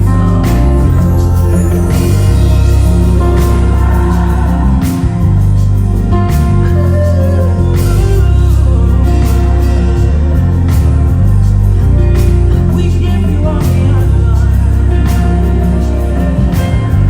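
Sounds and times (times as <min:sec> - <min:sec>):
drums: 0:00.0 - 0:17.0
electric bass line: 0:00.0 - 0:17.0
choir singing: 0:00.5 - 0:10.7.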